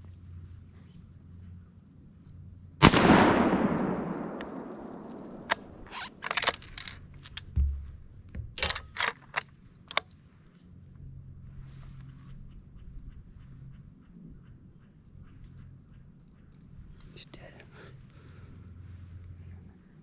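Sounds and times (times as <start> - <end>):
rifle shot echoing: 2.8 - 6.9
sharp clicks and scrapes: 5.4 - 7.5, 8.6 - 10.1.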